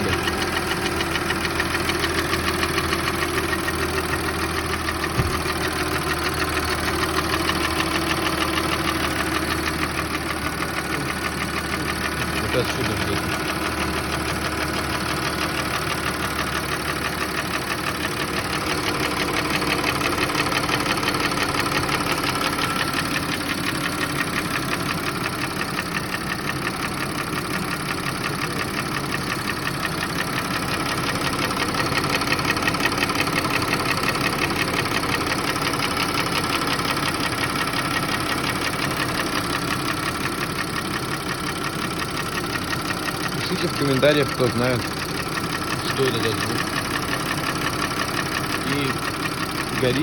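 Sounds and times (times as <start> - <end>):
car engine idling: 0.0 - 50.0
rapid engine knock: 0.0 - 50.0.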